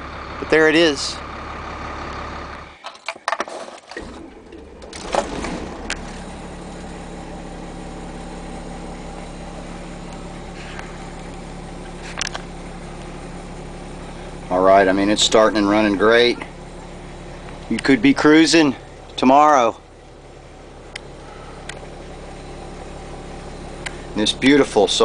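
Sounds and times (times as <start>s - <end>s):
diesel engine starting and idling: 0.0s - 25.0s
clicks: 20.9s - 21.9s.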